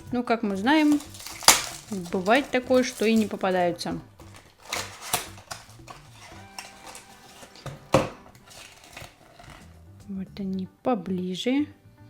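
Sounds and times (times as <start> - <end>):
packaging rustling: 0.5 - 9.8
cardboard boxes knocking together: 0.7 - 9.6.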